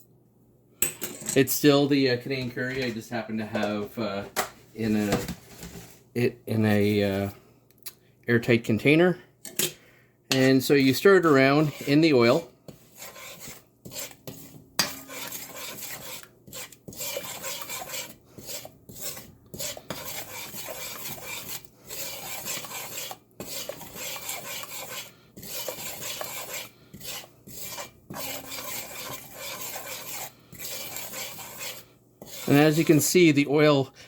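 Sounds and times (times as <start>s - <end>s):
spoon scraping bottom of pot: 9.6s - 33.2s.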